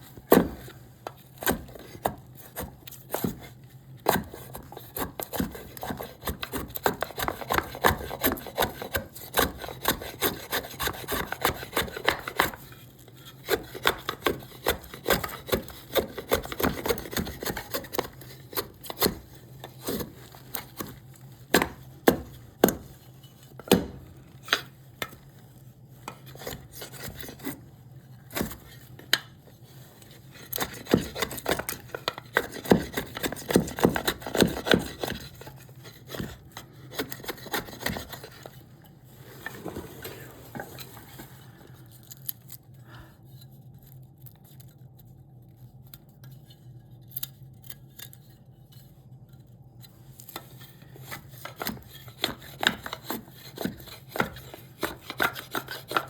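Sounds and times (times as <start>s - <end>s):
chisel knocking and scraping wood: 1.4s - 25.2s, 30.4s - 38.6s, 50.4s - 56.0s.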